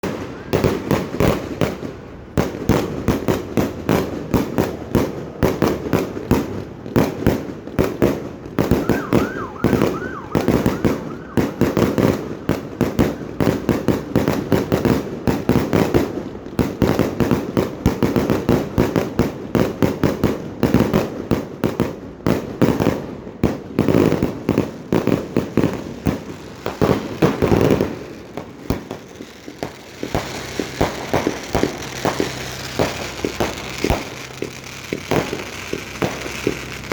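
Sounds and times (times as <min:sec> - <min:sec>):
fireworks rising whistles: 0:00.0 - 0:01.4, 0:08.6 - 0:14.8, 0:23.9 - 0:36.9
fireworks bangs and crackles: 0:00.0 - 0:36.9.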